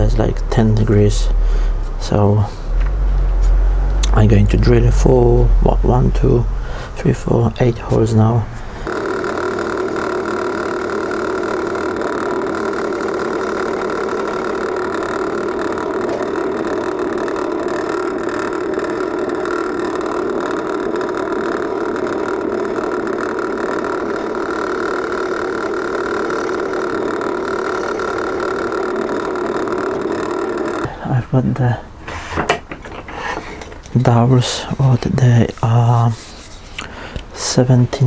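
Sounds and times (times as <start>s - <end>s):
drill press motor humming: 0.0s - 38.0s.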